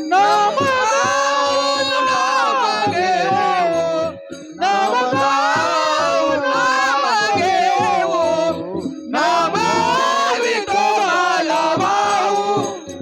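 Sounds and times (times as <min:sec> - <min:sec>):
musical accompaniment: 0:00.0 - 0:13.0
person singing devotional song: 0:00.0 - 0:13.0.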